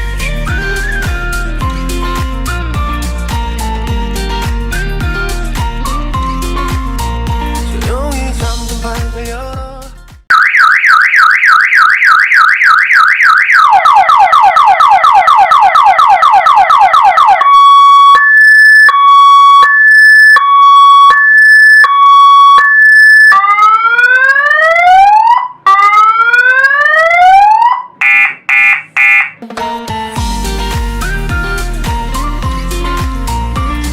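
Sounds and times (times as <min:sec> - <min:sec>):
electronic siren: 0:10.3 - 0:29.4
short pulsed beeps: 0:28.0 - 0:29.4.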